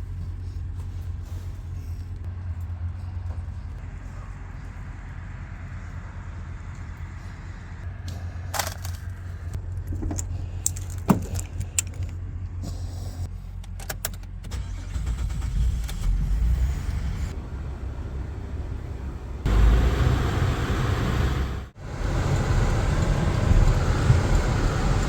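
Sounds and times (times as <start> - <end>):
truck engine rumbling: 0.0 - 25.0
sharp clicks and rattles: 9.8 - 12.2.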